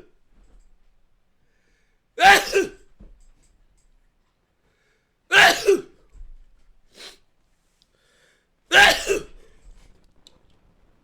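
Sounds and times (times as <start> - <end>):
person sneezing loudly: 2.2 - 2.9, 5.3 - 6.0, 8.7 - 9.5.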